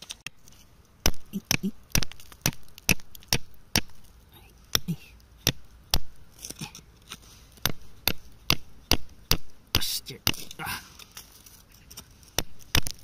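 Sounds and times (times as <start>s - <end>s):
hammer chipping at rock: 1.0s - 4.0s, 4.7s - 6.8s, 7.6s - 10.6s, 12.3s - 13.0s.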